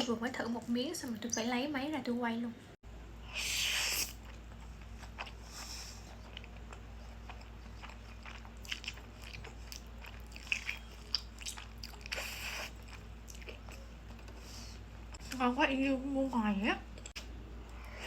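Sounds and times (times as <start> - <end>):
person chewing: 3.4 - 15.2.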